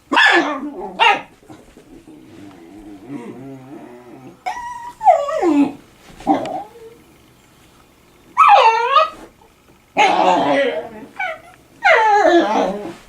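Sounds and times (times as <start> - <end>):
dog grumbling: 0.4 - 7.0, 10.0 - 13.0
dog whining: 2.7 - 7.0, 8.4 - 9.3, 10.0 - 13.0.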